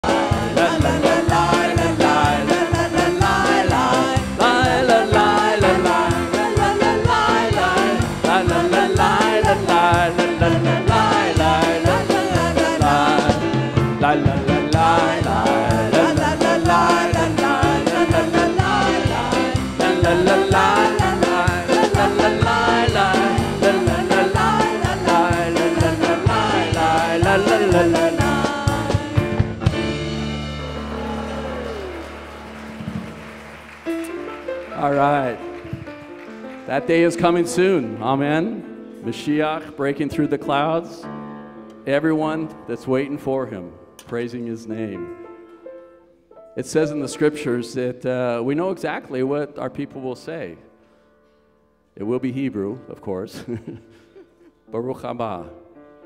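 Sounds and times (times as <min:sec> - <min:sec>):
worship band with singing: 0:00.0 - 0:33.2.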